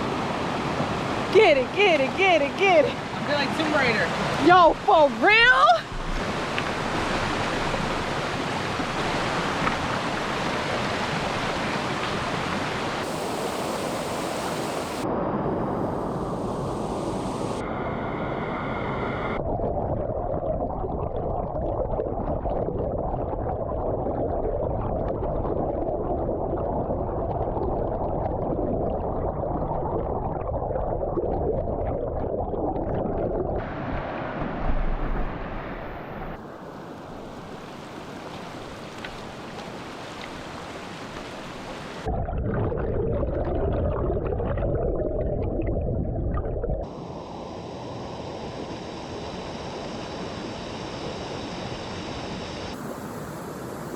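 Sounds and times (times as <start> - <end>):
river water rushing: 2.8 - 15.0, 33.6 - 42.1.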